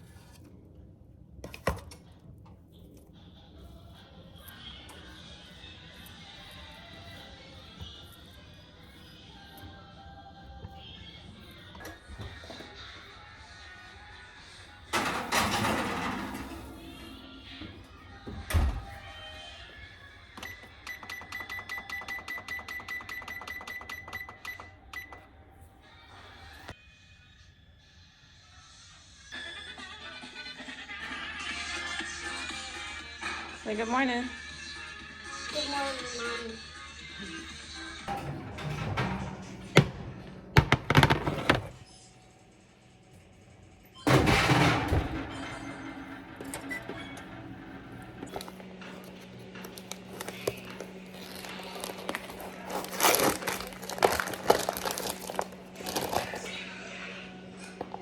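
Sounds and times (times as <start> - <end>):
noisy clatter: 14.9 - 17.2, 38.1 - 41.8, 44.1 - 56.6
knocks and thumps: 38.1 - 41.8.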